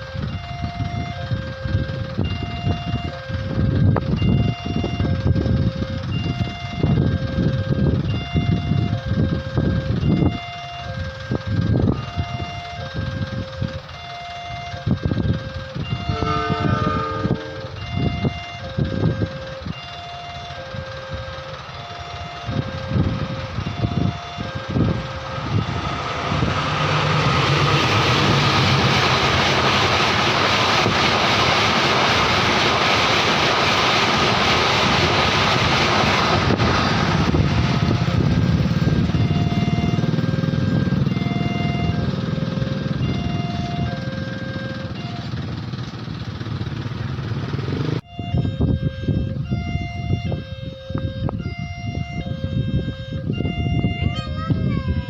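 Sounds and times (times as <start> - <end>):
train wheels on rails: 0.0 - 41.2, 41.8 - 48.1
road vehicles passing: 0.0 - 55.0
two-tone crossing warning siren: 0.0 - 55.0
short horn: 16.0 - 17.9.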